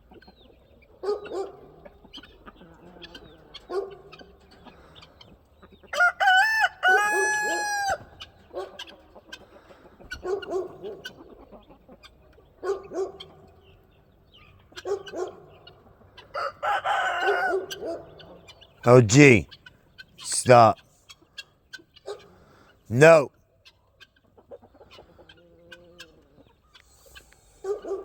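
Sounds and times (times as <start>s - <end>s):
rooster crowing: 6.0s - 8.0s.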